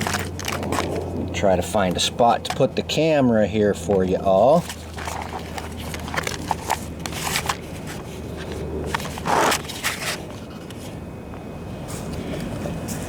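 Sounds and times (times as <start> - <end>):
handling clicks and knocks: 0.0 - 1.0, 1.8 - 2.8, 3.7 - 10.8
low steady hum: 0.0 - 13.0
short rustling scrape: 4.6 - 11.0.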